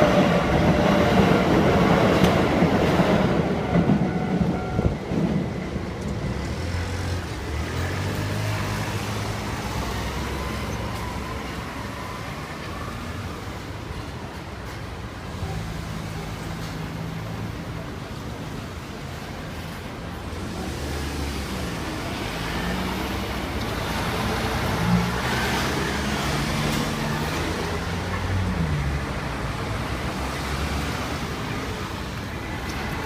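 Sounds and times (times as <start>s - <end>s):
engines revving: 20.4s - 31.5s.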